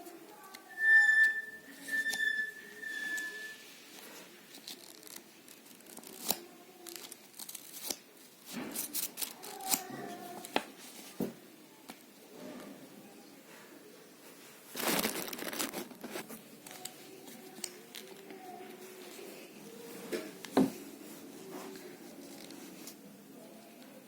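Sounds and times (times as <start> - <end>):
wrapping crinkling and tearing: 4.0 - 10.6, 14.7 - 18.4.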